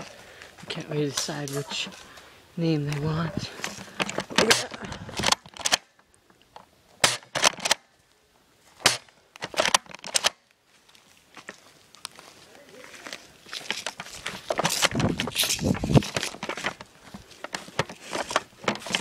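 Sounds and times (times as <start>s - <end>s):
airsoft gun shots: 4.4s - 4.7s, 7.0s - 7.8s, 8.8s - 9.1s.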